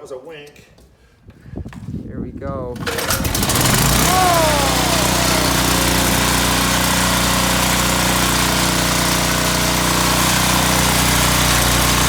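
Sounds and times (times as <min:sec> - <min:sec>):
generator engine running: 0:02.8 - 0:12.0.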